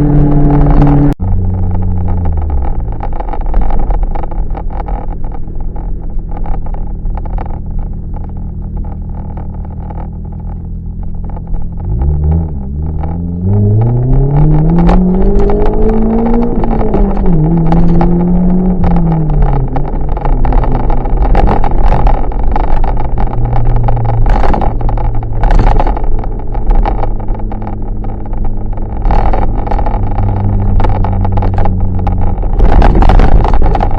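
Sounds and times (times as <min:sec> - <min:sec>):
exhaust pops: 0:00.0 - 0:33.9
loud car exhaust accelerating: 0:00.0 - 0:33.9.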